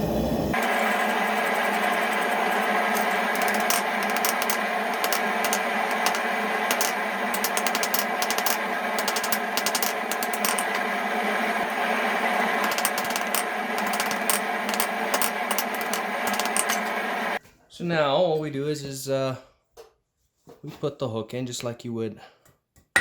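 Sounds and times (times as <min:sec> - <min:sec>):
forge running: 0:00.0 - 0:17.4.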